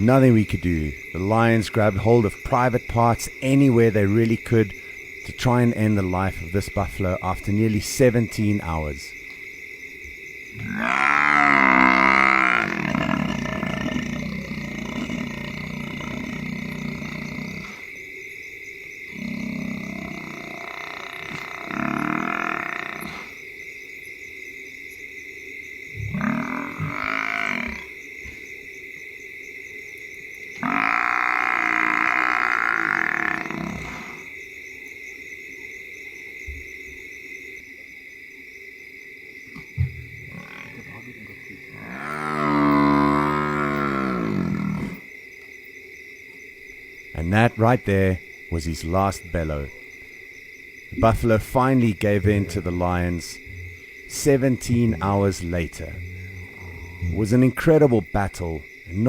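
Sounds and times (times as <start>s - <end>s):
night insects chirring: 0.0s - 59.0s
buffalo bellowing: 10.6s - 17.9s, 30.6s - 34.3s, 40.2s - 45.0s.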